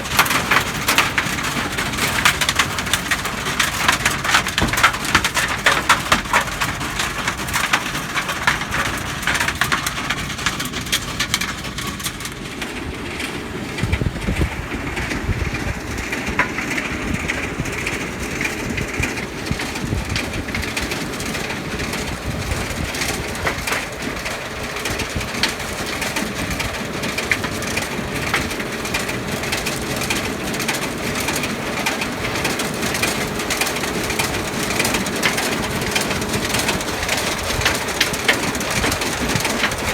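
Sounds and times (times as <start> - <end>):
tractor engine running: 0.0 - 39.9
stones clattering against machine: 0.1 - 12.0.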